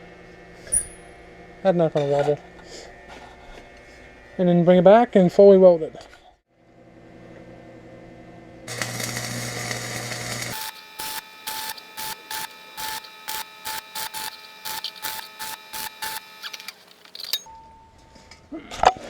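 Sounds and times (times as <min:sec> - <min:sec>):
welder electrical hum: 0:06.6 - 0:17.5
welding arc buzzing and crackling: 0:08.7 - 0:17.4.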